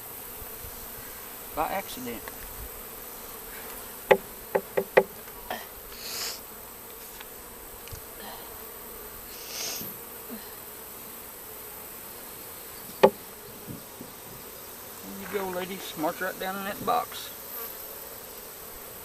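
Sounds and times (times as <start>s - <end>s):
bees buzzing: 0.0s - 19.0s
sharp knocks: 4.1s - 5.1s, 12.9s - 14.1s.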